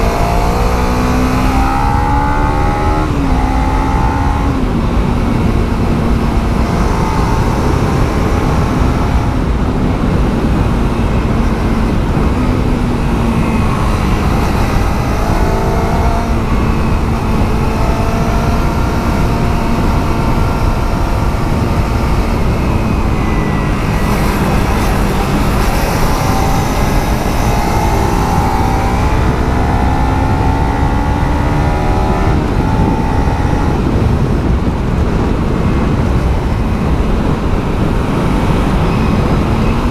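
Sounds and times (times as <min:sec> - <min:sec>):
motorcycle engine revving: 0:00.0 - 0:39.9
dense low rumble: 0:01.7 - 0:39.9.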